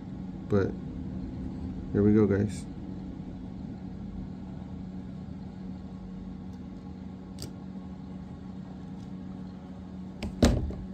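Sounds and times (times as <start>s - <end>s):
steady low hum: 0.0s - 10.9s.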